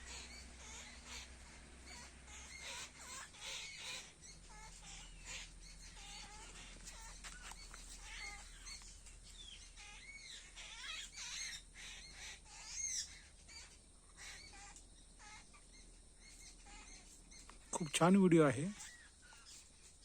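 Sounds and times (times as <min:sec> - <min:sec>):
birds chirping and whistling: 0:00.0 - 0:20.0.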